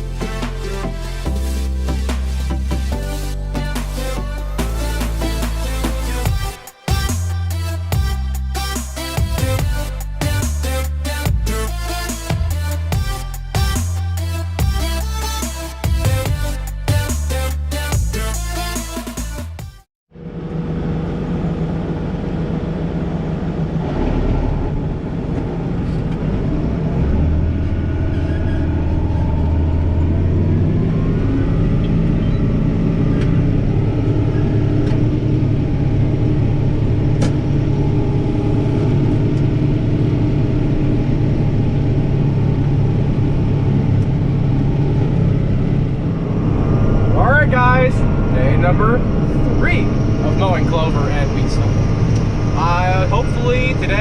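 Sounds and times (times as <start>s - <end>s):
vehicle engine running: 0.0s - 19.5s, 20.1s - 54.0s.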